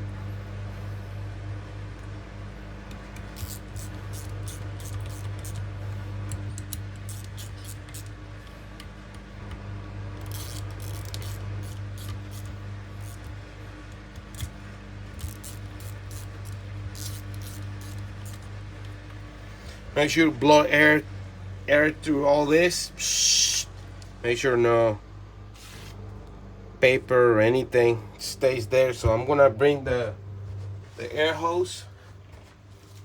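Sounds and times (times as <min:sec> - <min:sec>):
steady low hum: 0:00.0 - 0:33.0
small metal parts clicking: 0:06.3 - 0:08.1, 0:10.2 - 0:13.3.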